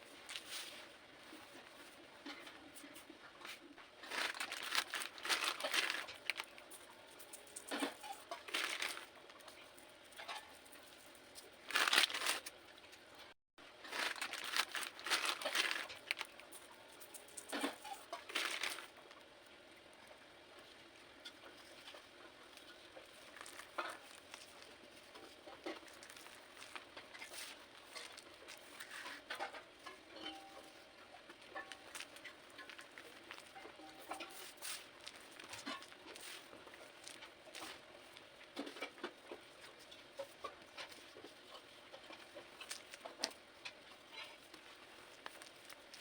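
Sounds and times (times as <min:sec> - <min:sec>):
cornstarch crunching and crumbling: 0:04.0 - 0:09.6, 0:10.2 - 0:12.6, 0:13.8 - 0:19.2, 0:21.5 - 0:29.5, 0:31.3 - 0:46.0.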